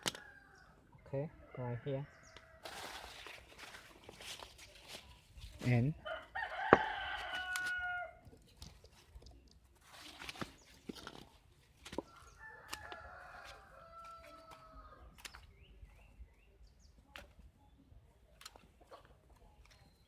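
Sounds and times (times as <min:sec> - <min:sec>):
distant rooster crowing: 0:06.0 - 0:08.2, 0:12.0 - 0:15.1.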